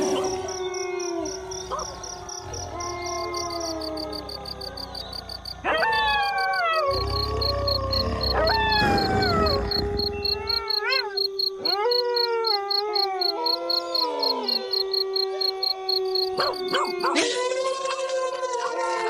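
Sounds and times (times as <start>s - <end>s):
crickets chirping: 0.0s - 17.2s
wolves howling: 0.0s - 17.3s
wolves yipping: 0.0s - 17.3s.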